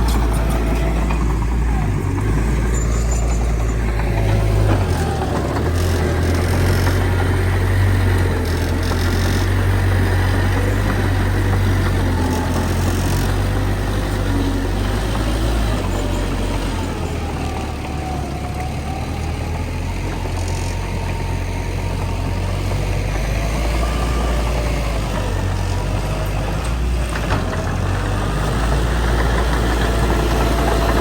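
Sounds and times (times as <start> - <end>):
bulldozer diesel engine rumbling: 0.0 - 31.0.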